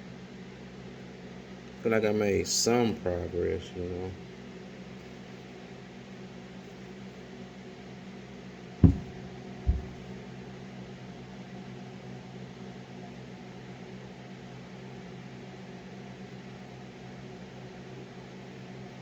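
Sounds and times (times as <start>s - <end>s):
steady mechanical hum: 0.0s - 19.0s
sharp knocks: 8.8s - 10.0s.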